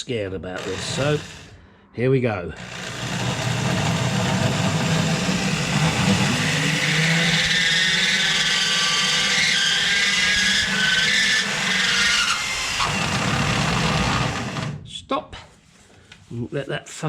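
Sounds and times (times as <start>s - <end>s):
burr scraping squeal on metal: 0.6s - 1.6s, 2.6s - 14.8s
electric drill motor hum: 0.6s - 1.6s, 2.6s - 14.8s.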